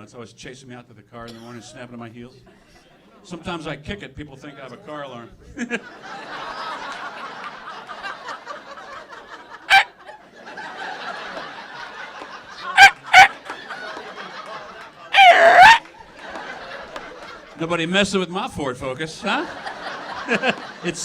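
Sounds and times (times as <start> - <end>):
audience laughing: 5.6 - 17.8, 19.2 - 21.0
man making dog yelps: 12.8 - 13.4, 15.1 - 15.8
man whooping like car alarm: 15.2 - 15.8.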